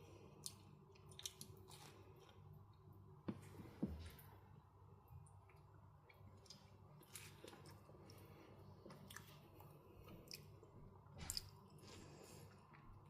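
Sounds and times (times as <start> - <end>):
wet chewing and mouth smacks: 0.4 - 2.4.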